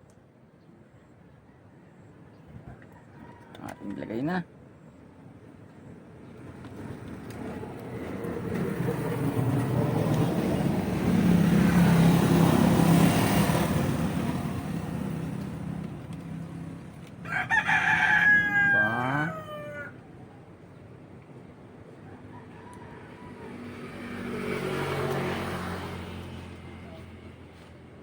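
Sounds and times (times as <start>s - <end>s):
rooster crowing: 2.8s - 4.2s, 17.2s - 20.1s, 22.0s - 23.8s
motor vehicle passing: 6.4s - 19.9s, 22.5s - 28.0s.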